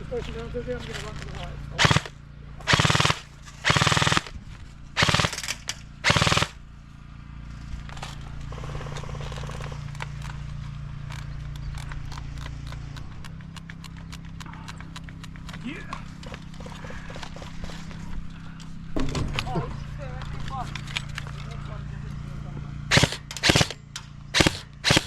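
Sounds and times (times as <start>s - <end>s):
steady low hum: 0.0s - 25.0s
single shots and ticks: 1.8s - 4.3s, 5.0s - 6.6s, 9.4s - 15.6s, 22.9s - 25.0s
airsoft guns firing bursts: 1.8s - 4.4s, 5.0s - 6.6s, 22.9s - 25.0s.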